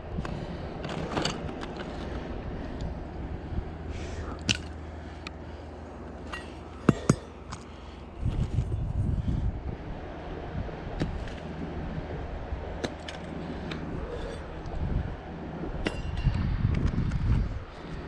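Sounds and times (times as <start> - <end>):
low rumbling: 0.0 - 18.0
tool handling knocks and clicks: 6.3 - 7.7.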